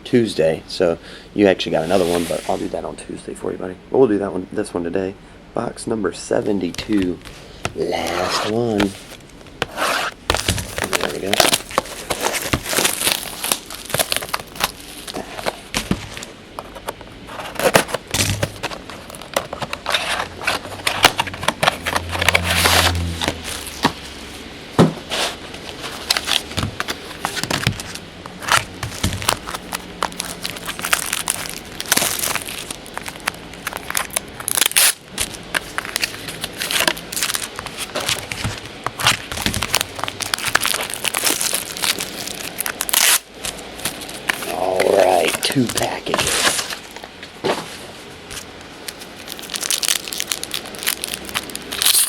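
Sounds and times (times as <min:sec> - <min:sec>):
plastic shrink wrap crinkling and tearing: 0:10.1 - 0:16.2, 0:25.2 - 0:47.0, 0:48.8 - 0:52.0.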